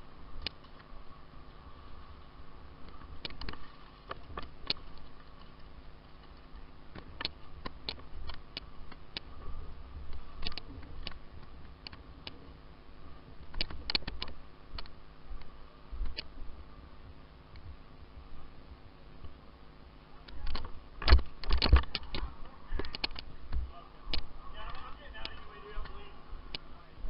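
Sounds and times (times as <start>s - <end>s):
faint steady hum: 0.0s - 27.0s
sharp clicks and snaps: 0.4s - 0.8s, 6.9s - 9.3s, 10.1s - 12.4s, 13.4s - 14.9s, 20.2s - 23.3s.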